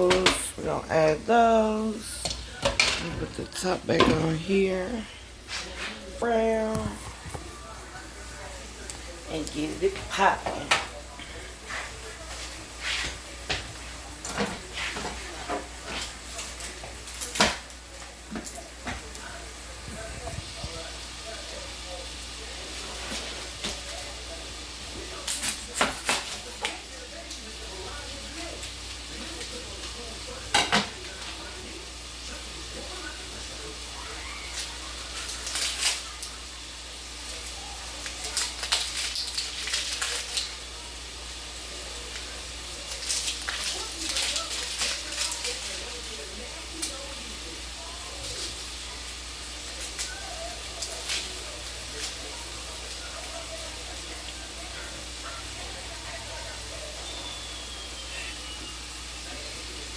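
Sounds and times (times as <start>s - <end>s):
kitchen knocks and clatters: 0.0s - 0.7s, 2.0s - 4.8s, 9.4s - 19.2s, 25.2s - 26.9s, 30.4s - 31.4s
onions sizzling in a pan: 0.0s - 59.9s.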